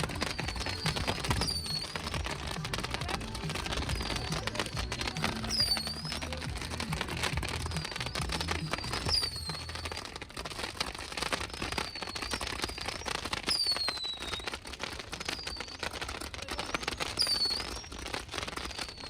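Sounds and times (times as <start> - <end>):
high falling chirp: 0.0 - 2.6
music with low bass: 0.0 - 9.9
fireworks crackling: 0.0 - 19.0.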